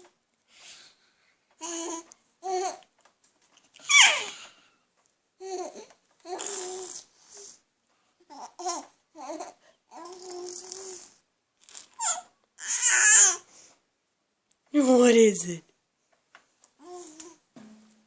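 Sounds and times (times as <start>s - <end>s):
baby babbling and cooing: 1.6s - 2.9s, 3.8s - 4.4s, 5.4s - 7.1s, 8.2s - 11.2s, 12.0s - 13.5s, 16.8s - 17.4s.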